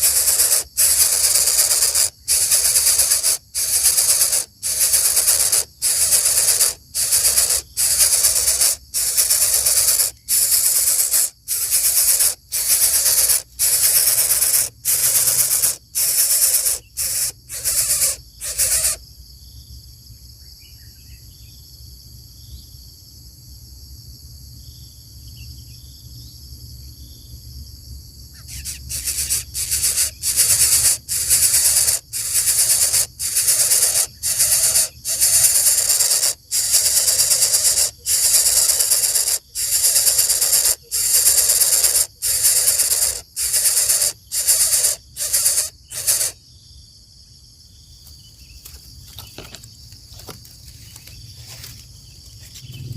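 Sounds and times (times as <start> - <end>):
chicks hissing harshly: 0.0 - 19.0, 28.4 - 46.4
distant bird chirps: 28.4 - 46.4.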